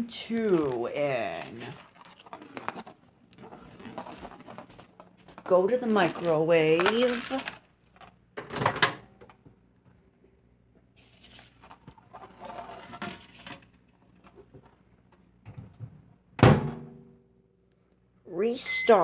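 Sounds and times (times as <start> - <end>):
loud thunk: 16.4 - 17.0.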